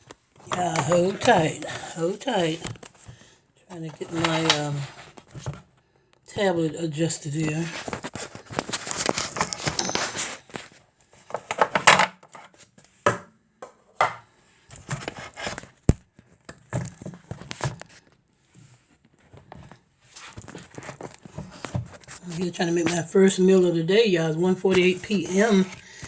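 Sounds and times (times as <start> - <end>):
tablet handling rustling and scraping: 0.0 - 3.2, 3.9 - 5.6, 7.4 - 12.7, 14.7 - 15.9, 16.5 - 22.9.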